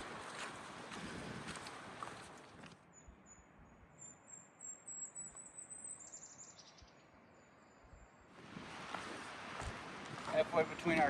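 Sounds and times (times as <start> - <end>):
footsteps on a trail: 0.0 - 2.8, 8.4 - 11.0
songbird singing high-pitched song: 2.9 - 8.2.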